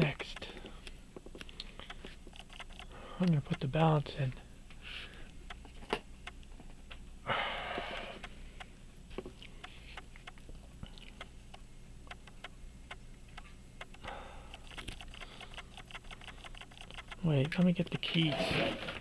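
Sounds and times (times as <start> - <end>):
small tool clicks on watch parts: 0.0 - 3.9, 11.2 - 12.6, 13.4 - 18.1.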